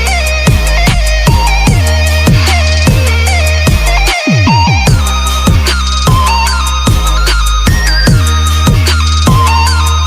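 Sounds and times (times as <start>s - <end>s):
electronic dance music: 0.0s - 10.0s
high synth melody: 0.0s - 10.0s
steady bass: 0.0s - 10.0s
deep kick drum hits: 0.5s - 3.1s.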